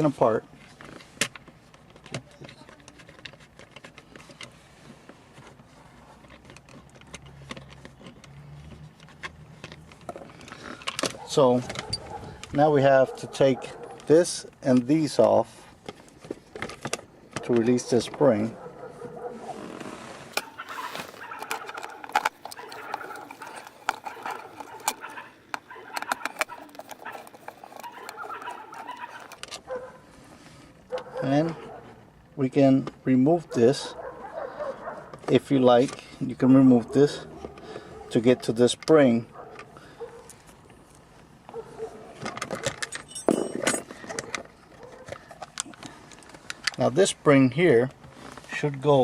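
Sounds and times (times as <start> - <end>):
plastic parts clicking and tapping: 20.4 - 29.8, 42.2 - 46.8.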